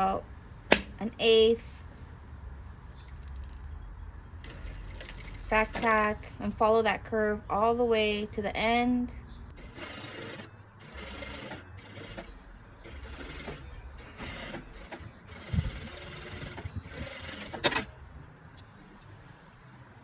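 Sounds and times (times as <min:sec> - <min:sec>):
sewing machine stitching: 0:04.4 - 0:06.0, 0:09.6 - 0:18.0.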